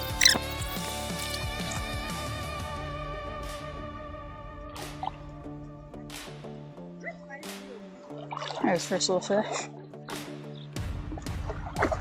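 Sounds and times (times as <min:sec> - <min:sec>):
brief high squeak: 0:00.0 - 0:01.4.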